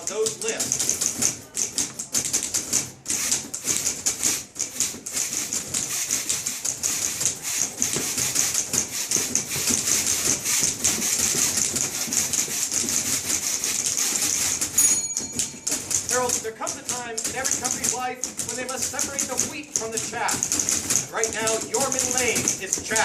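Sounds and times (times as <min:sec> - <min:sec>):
typewriter keys clattering rhythmically: 0:00.0 - 0:23.0.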